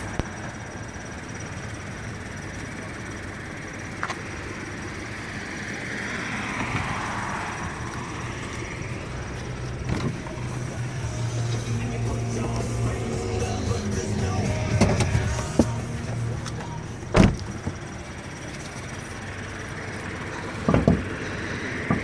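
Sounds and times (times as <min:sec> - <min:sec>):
car engine running: 0:00.0 - 0:22.0.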